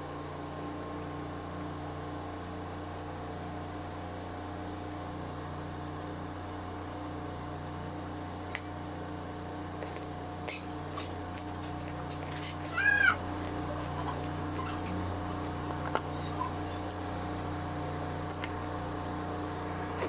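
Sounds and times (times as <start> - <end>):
steady electrical hum: 0.0 - 20.0
cat meowing: 12.4 - 15.1, 16.1 - 17.0.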